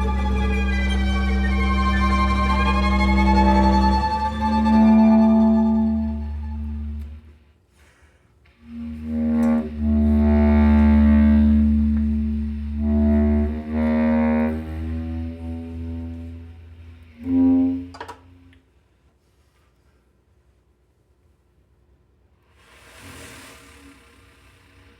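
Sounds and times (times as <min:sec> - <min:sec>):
low drone: 0:00.0 - 0:07.3, 0:08.8 - 0:18.5
long held notes: 0:00.0 - 0:07.4, 0:08.7 - 0:18.6.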